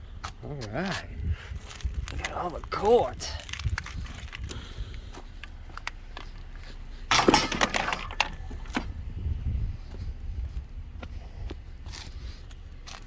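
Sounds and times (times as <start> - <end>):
loud clatter: 7.1 - 8.4
junk clinking and knocking: 7.1 - 8.9.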